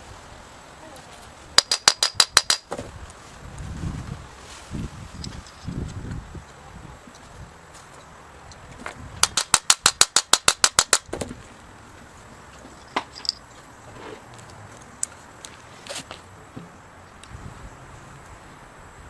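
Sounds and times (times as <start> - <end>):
impact wrench hammering: 1.6 - 2.7, 9.2 - 11.1
metal parts clinking: 5.2 - 5.7, 12.7 - 13.6.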